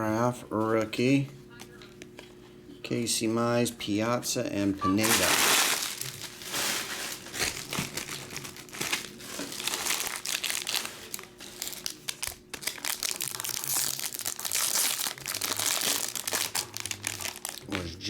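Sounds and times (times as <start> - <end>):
foil wrappers crinkling: 5.0 - 17.9.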